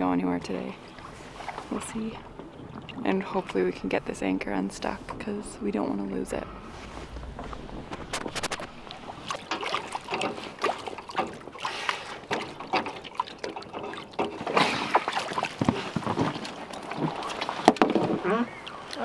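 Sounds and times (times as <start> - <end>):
water sloshing against a boat: 0.0 - 19.0
knocks and clicks: 7.0 - 11.6.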